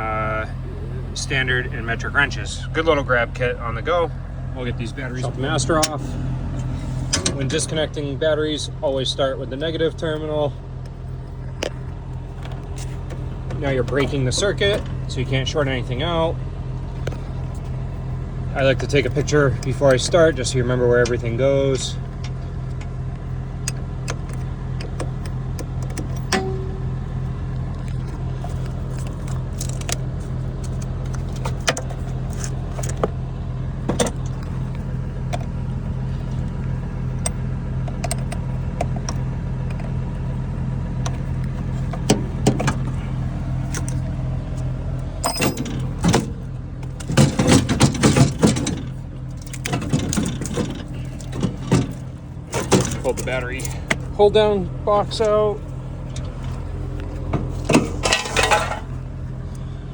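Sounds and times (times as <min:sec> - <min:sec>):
low engine drone: 0:00.0 - 0:59.9
metal tools clinking: 0:24.2 - 0:27.0, 0:45.2 - 0:46.2, 0:56.1 - 0:59.0.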